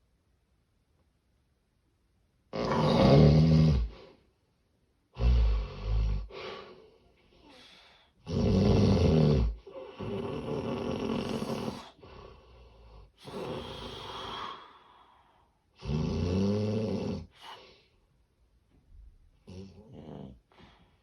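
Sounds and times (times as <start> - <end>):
loud rattling snoring: 2.6 - 3.9, 8.3 - 11.9.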